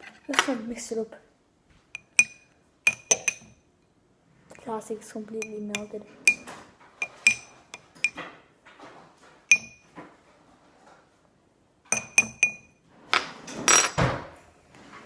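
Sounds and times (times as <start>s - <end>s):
utensil clinking against glass: 2.0s - 3.6s, 5.4s - 8.2s, 9.5s - 9.9s, 11.9s - 12.7s.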